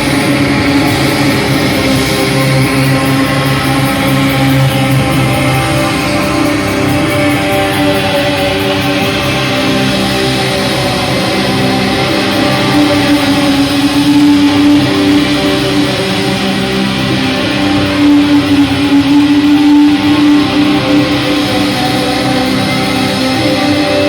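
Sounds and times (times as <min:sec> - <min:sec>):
electric guitar chords: 0:00.0 - 0:24.0.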